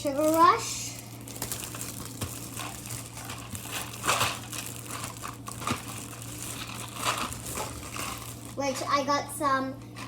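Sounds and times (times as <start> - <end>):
plastic packaging crinkling: 0.0 - 8.7.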